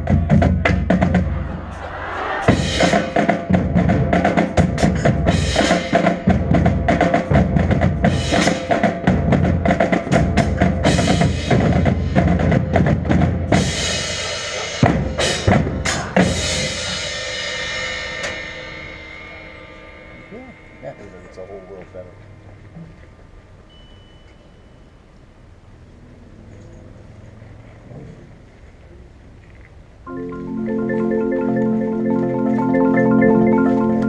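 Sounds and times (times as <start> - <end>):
snare and bass drum strokes: 0.0 - 19.4
marching band playing: 0.0 - 21.8, 30.1 - 34.0
cymbal crashes ringing: 13.6 - 22.5.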